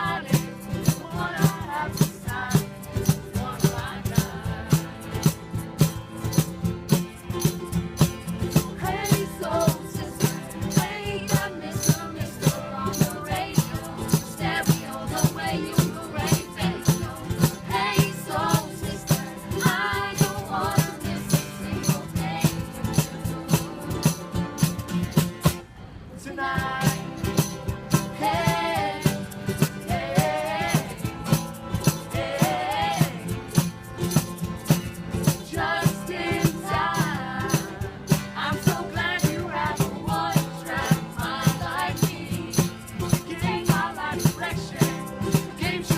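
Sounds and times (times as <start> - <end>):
song with singing over a beat: 0.0 - 6.4, 8.2 - 25.6, 26.3 - 45.9.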